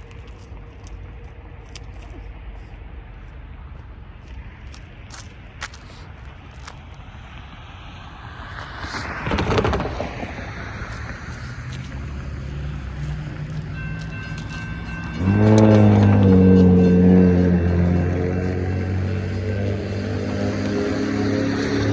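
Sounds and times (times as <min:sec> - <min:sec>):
car passing: 0:00.0 - 0:21.9
train rumble: 0:00.0 - 0:21.9
steady high tones: 0:13.5 - 0:21.5
locomotive air horn: 0:15.2 - 0:18.8.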